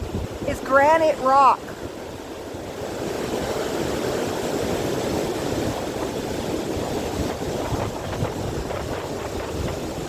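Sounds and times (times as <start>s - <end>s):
waterfall rushing: 0.0s - 1.9s
wind buffeting microphone: 0.0s - 10.0s.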